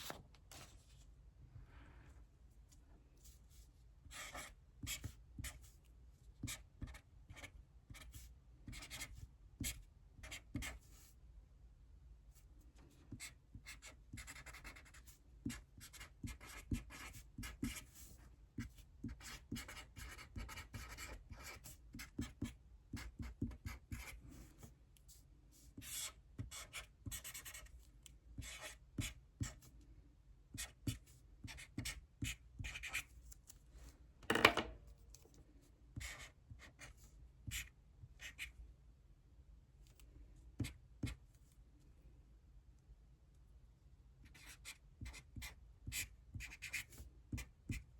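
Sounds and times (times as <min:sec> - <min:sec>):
pen scratching on paper: 0:04.1 - 0:05.7, 0:06.4 - 0:11.1, 0:13.1 - 0:24.4, 0:25.8 - 0:27.7, 0:28.4 - 0:29.7, 0:30.6 - 0:33.1, 0:36.0 - 0:38.5, 0:44.3 - 0:47.9.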